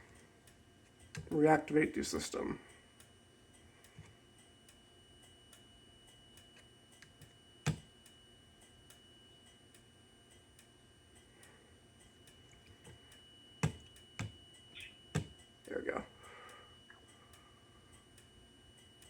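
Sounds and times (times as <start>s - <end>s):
soft regular ticking: 0.0s - 19.0s.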